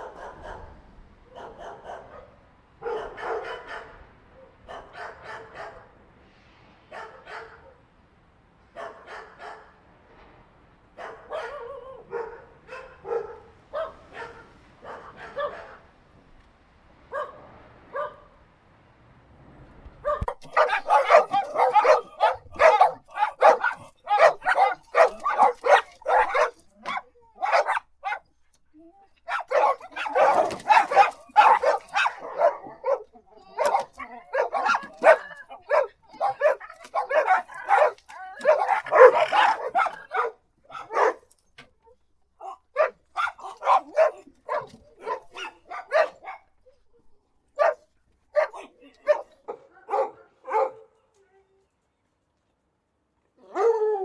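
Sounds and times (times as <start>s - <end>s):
dogs barking: 0.0s - 6.0s, 8.8s - 9.8s, 11.0s - 15.9s, 17.1s - 18.3s, 20.0s - 28.4s, 29.3s - 41.3s, 42.4s - 46.6s, 47.6s - 51.0s.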